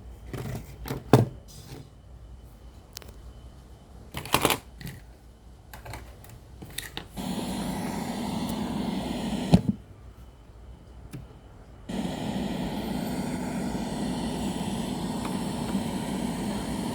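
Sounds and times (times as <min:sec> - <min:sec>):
radio hum and hiss: 0:07.2 - 0:09.7, 0:11.9 - 0:16.9.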